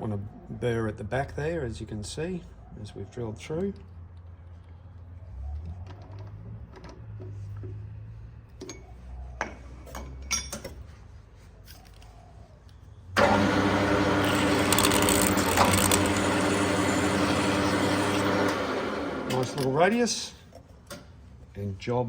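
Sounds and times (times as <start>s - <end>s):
lathe humming: 13.2s - 19.7s.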